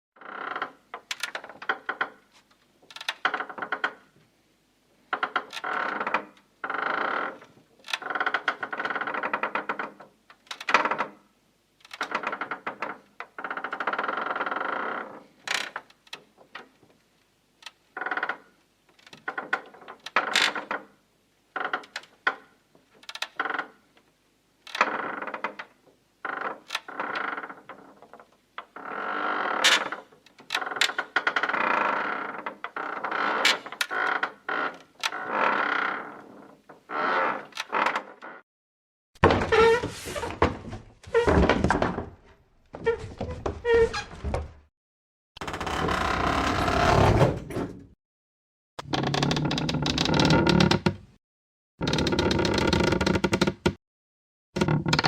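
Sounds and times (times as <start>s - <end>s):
wood creaking under strain: 0.2s - 4.1s, 5.1s - 11.2s, 21.5s - 23.8s, 24.7s - 38.4s, 39.2s - 44.7s, 45.4s - 48.0s, 48.8s - 51.2s, 51.8s - 53.8s.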